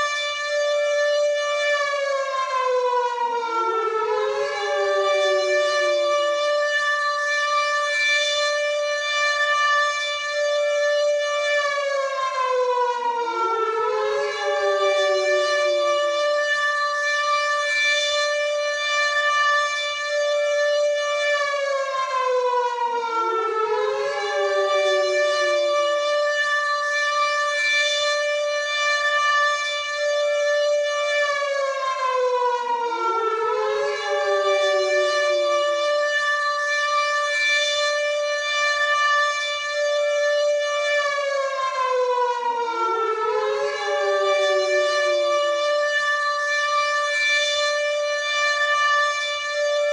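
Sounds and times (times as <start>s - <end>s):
air raid siren wailing: 0.0s - 49.9s.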